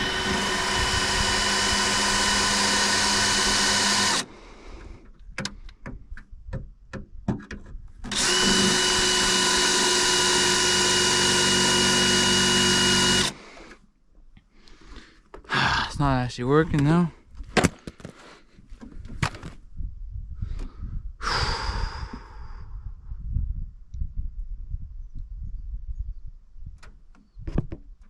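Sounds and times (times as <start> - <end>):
power drill running: 0.0 - 4.4, 8.1 - 13.8.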